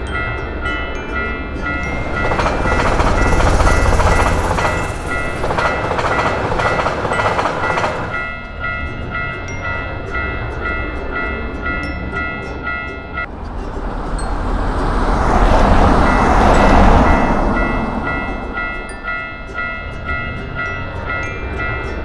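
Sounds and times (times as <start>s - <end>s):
railroad crossing bell ringing: 0.0s - 22.0s
train rushing past: 1.5s - 8.6s, 13.2s - 20.9s.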